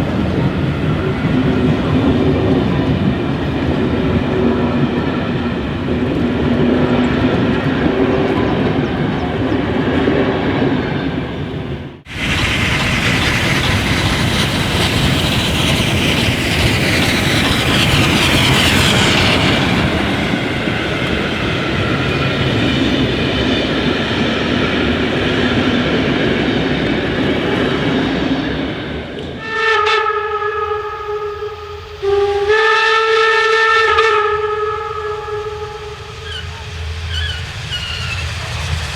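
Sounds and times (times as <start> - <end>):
train rolling on rails: 0.0 - 38.9
locomotive signal horn blasts: 29.4 - 36.2.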